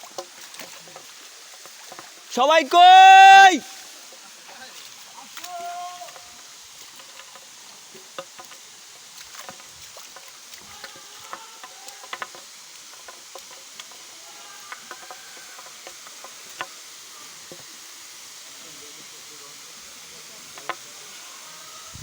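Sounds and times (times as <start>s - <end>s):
waterfall rushing: 2.2s - 6.6s.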